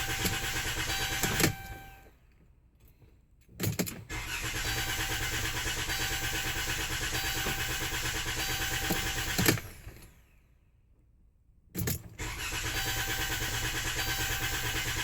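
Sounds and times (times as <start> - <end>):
starter cranking engine: 0.0 - 1.8, 4.1 - 10.0, 12.2 - 15.0.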